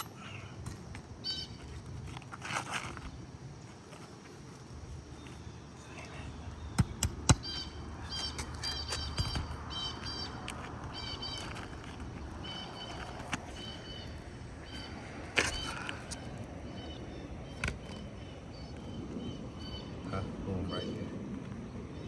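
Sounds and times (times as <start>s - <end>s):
shingle scraping: 0.0s - 18.9s
sharp knocks: 6.8s - 9.7s.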